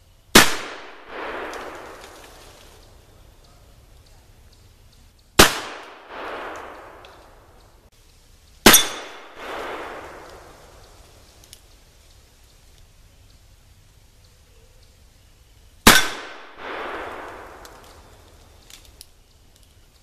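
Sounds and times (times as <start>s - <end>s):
revolver gunshots: 0.4s - 2.1s, 5.4s - 7.4s, 8.6s - 10.7s, 15.8s - 18.1s
gunshot echo: 0.4s - 2.2s, 5.4s - 7.4s, 8.6s - 10.7s, 15.9s - 18.1s.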